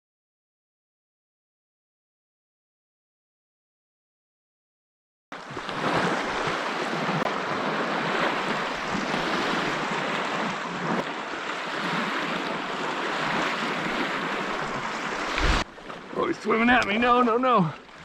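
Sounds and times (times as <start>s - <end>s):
lake waves breaking: 5.4s - 18.0s
strong wind: 5.6s - 15.7s.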